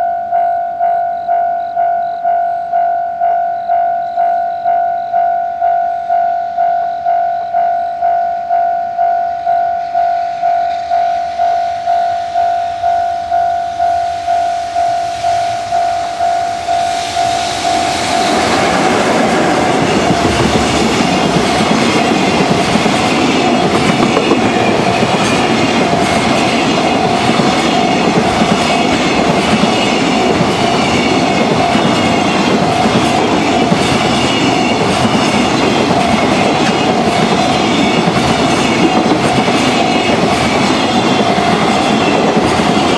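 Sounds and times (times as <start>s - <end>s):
level-crossing bell dinging: 0.0s - 42.9s
train wheels clicking over rail joints: 10.4s - 42.9s.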